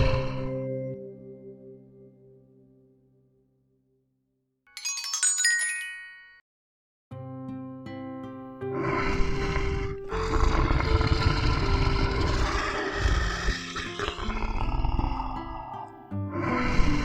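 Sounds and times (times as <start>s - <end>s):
light background music: 7.1s - 17.0s
large animal roaring: 8.8s - 17.0s.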